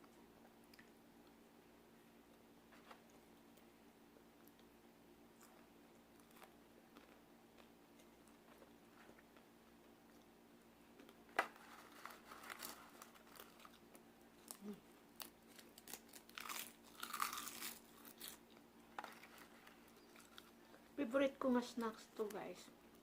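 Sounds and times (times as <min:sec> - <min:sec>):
crisp snack crunching: 0:11.0 - 0:20.6.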